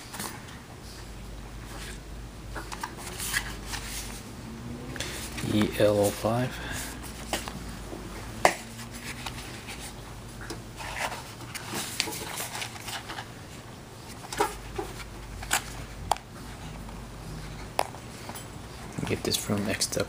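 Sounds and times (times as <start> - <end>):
soft rustling of handling: 5.0 - 20.0.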